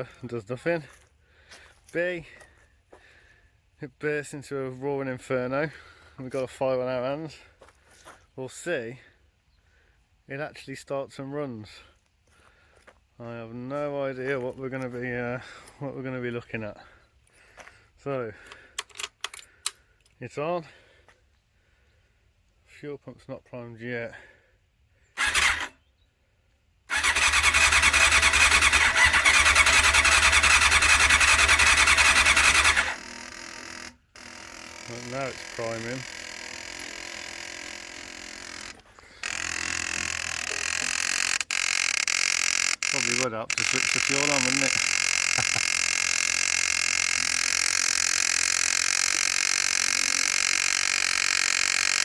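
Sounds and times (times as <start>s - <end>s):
electric fuel pump running: 25.2s - 25.7s, 26.9s - 52.0s
electric starter cranking engine: 25.2s - 25.8s, 26.9s - 52.0s.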